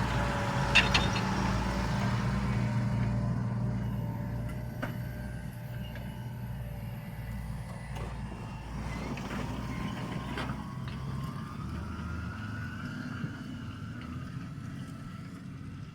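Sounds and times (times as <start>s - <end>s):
tractor diesel engine running: 0.0s - 15.8s
short metal clanks: 0.6s - 1.4s.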